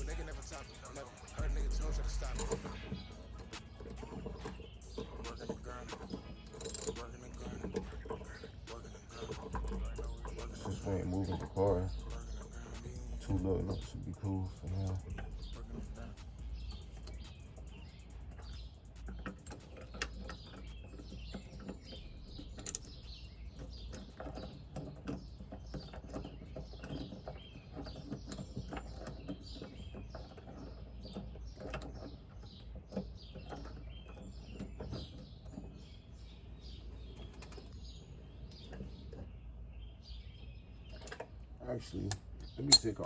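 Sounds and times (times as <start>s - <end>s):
metallic clicks of tools: 0.0s - 25.2s, 42.1s - 43.0s
small birds chirping: 0.0s - 43.0s.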